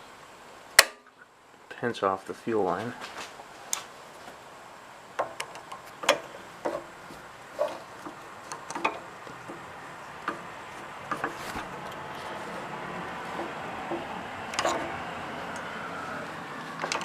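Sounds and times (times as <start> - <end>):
tools clicking and clinking: 13.4 - 15.0.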